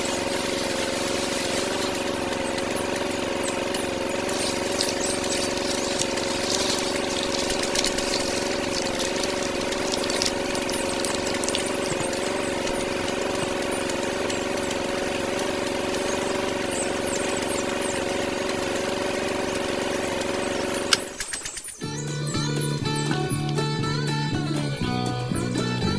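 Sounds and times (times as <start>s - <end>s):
small electric motor humming: 0.0s - 25.0s
faint clicks and crackles: 0.7s - 17.7s.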